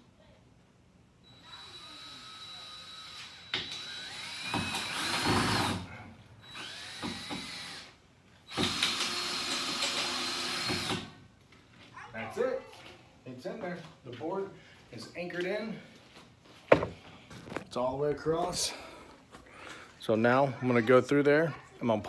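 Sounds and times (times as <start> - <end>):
power drill driving screw: 1.3 - 11.2.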